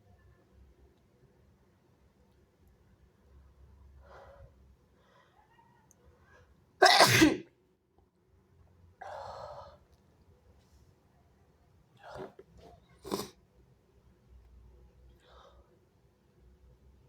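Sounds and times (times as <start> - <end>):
person sneezing: 6.8 - 7.5, 13.0 - 13.3.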